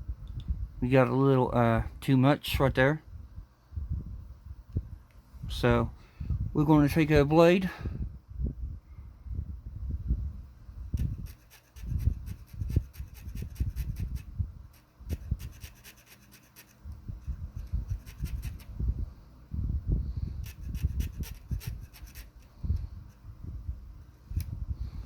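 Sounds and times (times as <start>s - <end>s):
blade scraping paint: 11.0s - 18.7s, 20.4s - 23.2s.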